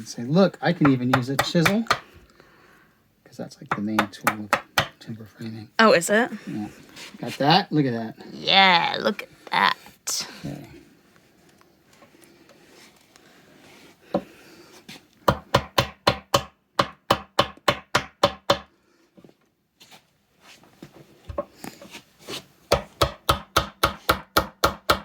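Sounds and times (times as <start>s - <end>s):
mallet striking chisel: 0.8s - 2.0s, 3.7s - 5.0s, 15.3s - 18.7s, 22.7s - 25.0s.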